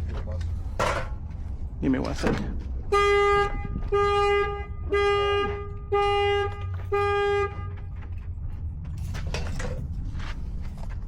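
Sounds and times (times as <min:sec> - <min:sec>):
car alarm honking: 0:02.9 - 0:08.0.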